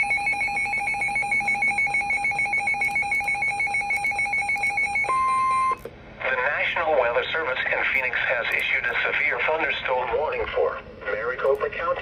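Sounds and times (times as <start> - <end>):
steady alarm tone: 0.0 - 5.8
warbling electronic alert tone: 0.0 - 5.8.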